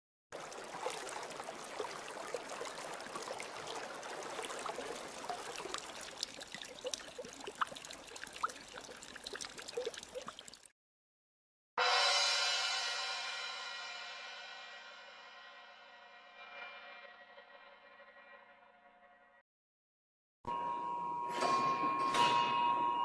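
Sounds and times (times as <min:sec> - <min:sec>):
water trickling and gurgling: 0:00.4 - 0:10.7.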